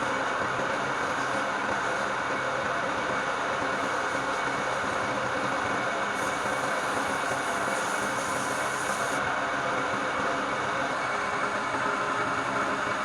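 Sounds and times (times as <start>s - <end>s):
wood lathe running: 0.0s - 9.2s.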